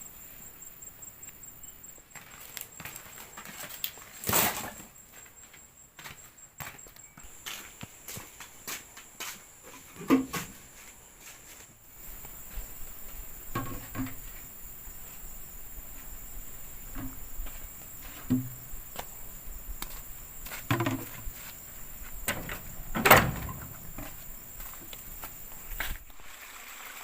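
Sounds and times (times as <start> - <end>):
high insect chirring: 11.8 - 26.0
dull thuds: 18.1 - 18.7, 20.6 - 21.4, 22.2 - 24.8.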